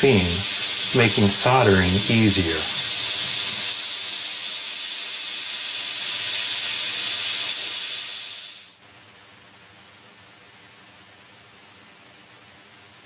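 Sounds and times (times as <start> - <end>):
torch flame hissing: 0.0 - 8.8.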